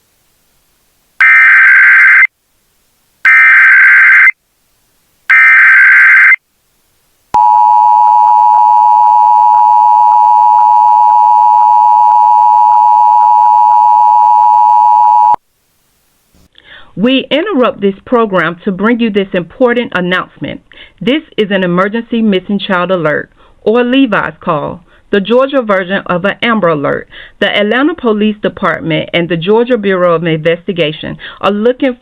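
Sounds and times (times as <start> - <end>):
buzzing data bursts: 1.2 - 2.3, 3.3 - 4.3, 5.3 - 6.4
two-tone attention signal: 1.2 - 2.3, 3.3 - 4.3, 5.3 - 6.4.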